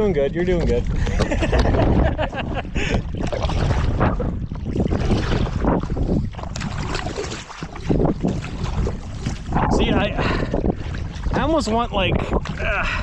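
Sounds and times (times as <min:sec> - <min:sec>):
wind buffeting microphone: 0:00.0 - 0:13.0
paddle strokes splashing water: 0:02.8 - 0:12.7.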